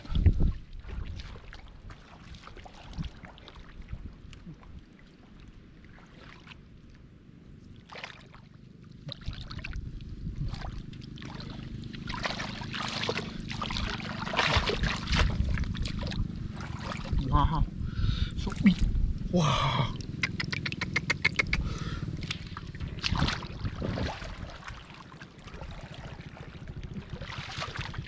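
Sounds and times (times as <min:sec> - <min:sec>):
shallow water sloshing and splashing: 0:00.0 - 0:19.2, 0:21.8 - 0:28.0.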